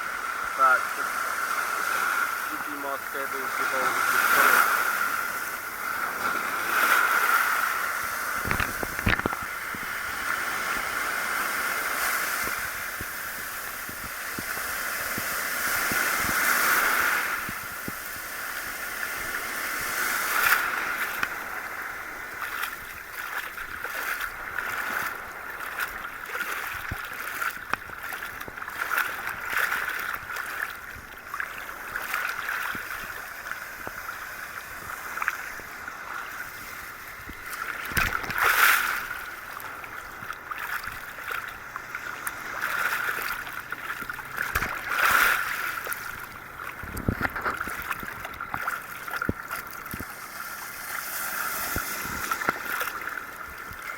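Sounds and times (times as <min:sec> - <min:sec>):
waves sloshing underwater: 0:00.0 - 0:53.9
small crackles: 0:08.3 - 0:10.2.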